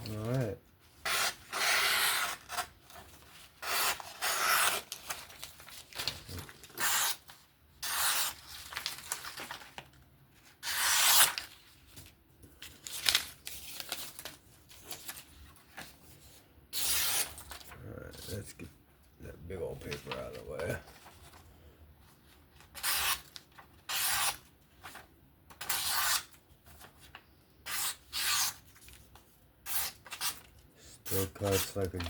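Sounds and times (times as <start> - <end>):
knife slicing through paper: 10.6 - 11.5.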